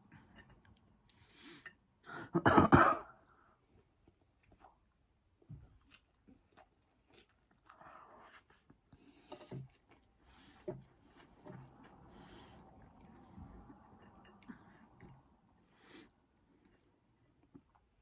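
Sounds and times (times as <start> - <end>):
chewing: 5.6 - 10.2.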